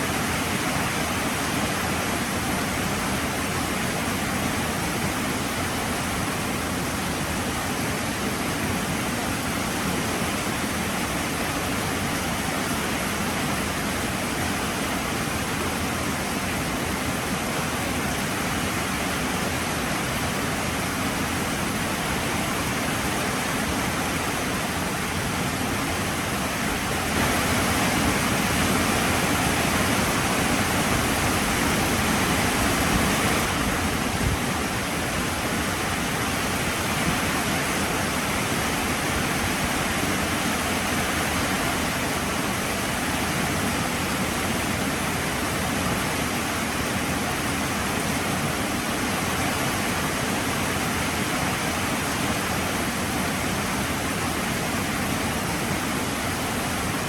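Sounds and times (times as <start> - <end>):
heavy rain falling: 15.3 - 50.0.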